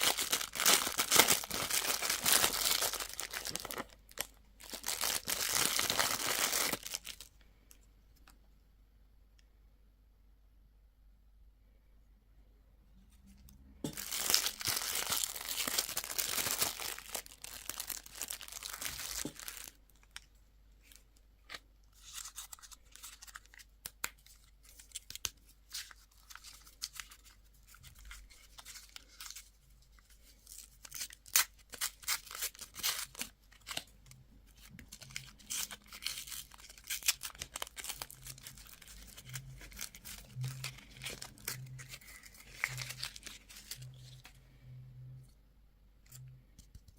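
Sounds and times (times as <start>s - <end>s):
packaging ripping: 0.0s - 7.3s, 14.0s - 20.1s, 34.9s - 44.2s
wrapper crinkling: 0.0s - 7.4s, 13.9s - 20.3s, 34.5s - 44.4s.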